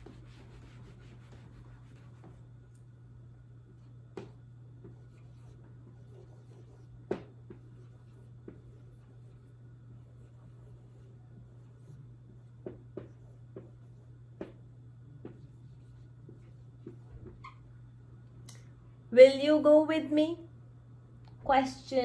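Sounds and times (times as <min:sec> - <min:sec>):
steady low hum: 0:00.0 - 0:22.0
pen tapping and scraping: 0:04.1 - 0:09.4, 0:12.5 - 0:14.6.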